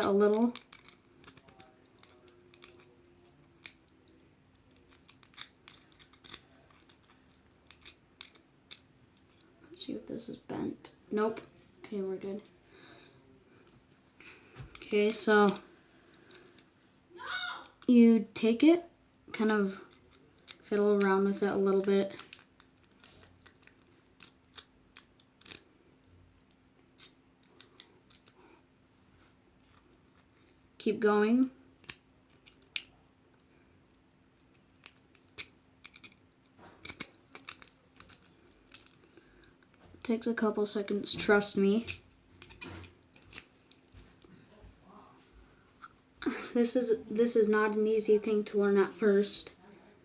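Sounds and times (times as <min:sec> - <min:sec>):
lock pick metal clicks and scrapes: 0:00.5 - 0:02.9, 0:04.8 - 0:09.4, 0:36.8 - 0:39.1, 0:41.9 - 0:43.8.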